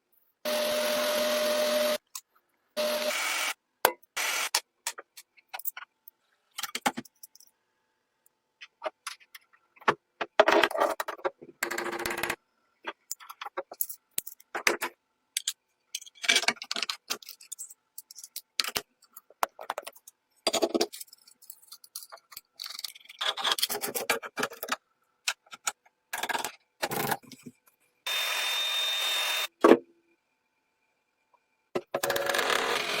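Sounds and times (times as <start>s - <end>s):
scraping and rubbing on metal parts: 12.9s - 24.8s.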